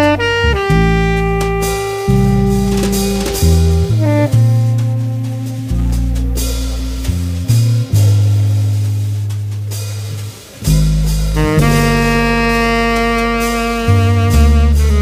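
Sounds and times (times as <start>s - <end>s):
held melody note: 0.0s - 8.5s
deep bass notes: 0.0s - 15.0s
drums: 0.0s - 15.0s.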